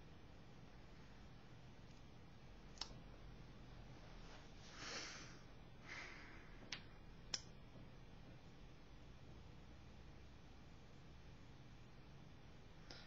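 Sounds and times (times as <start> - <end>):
faint sharp clicks: 2.7 - 3.0
soft hissing: 3.9 - 6.6.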